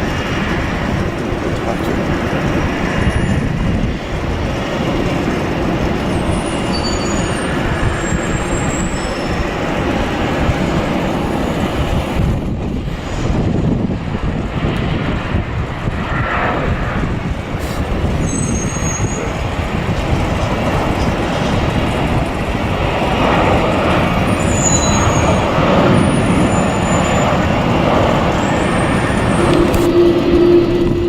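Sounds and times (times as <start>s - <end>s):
jet engines roaring: 0.0s - 31.0s.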